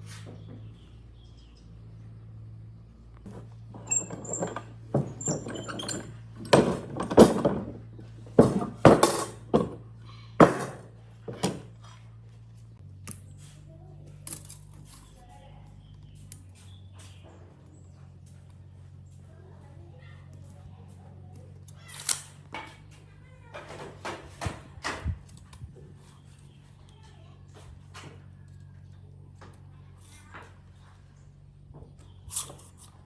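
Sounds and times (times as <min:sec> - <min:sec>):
sharp knocks and metallic clinks: 0:03.2 - 0:12.0, 0:14.2 - 0:15.2.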